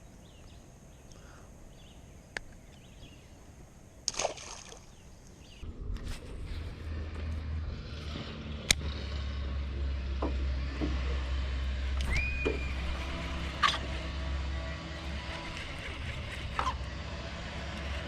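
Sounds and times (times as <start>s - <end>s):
boat motor humming: 5.6s - 18.0s.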